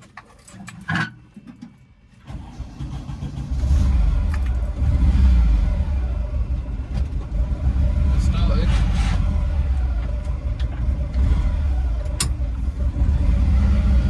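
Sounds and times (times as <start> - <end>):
engine starting and rumbling: 2.2 - 14.0.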